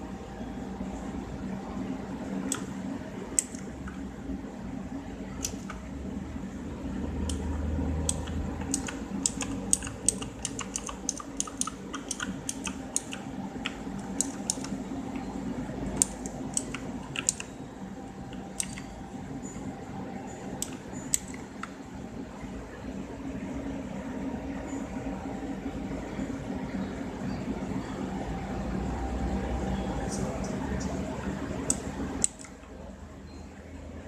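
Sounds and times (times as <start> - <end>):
steady low hum: 0.0 - 34.0
mechanical keyboard keystroke clicks: 8.1 - 14.8, 16.0 - 17.5.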